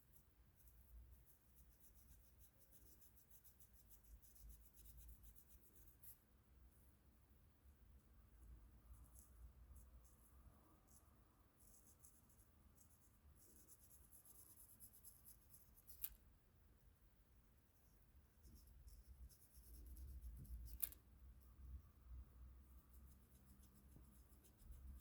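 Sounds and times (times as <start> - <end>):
coloring strokes on paper: 0.0 - 6.3, 8.8 - 16.2, 17.7 - 21.0, 22.6 - 25.0.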